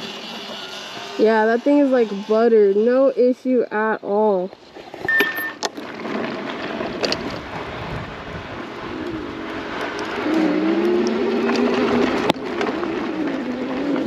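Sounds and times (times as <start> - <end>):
wind: 0.0 - 14.0
tyres on gravel: 4.2 - 14.0.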